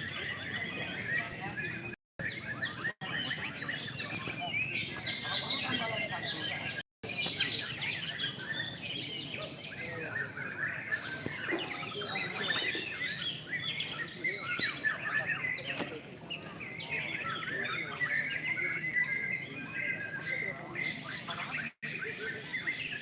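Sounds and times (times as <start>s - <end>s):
songbirds singing: 0.0s - 23.0s.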